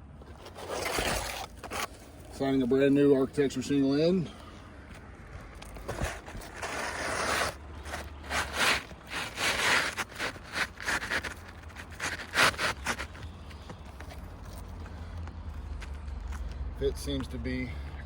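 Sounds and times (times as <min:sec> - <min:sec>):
shingle scraping against shingles: 0:00.0 - 0:03.6, 0:05.6 - 0:14.6.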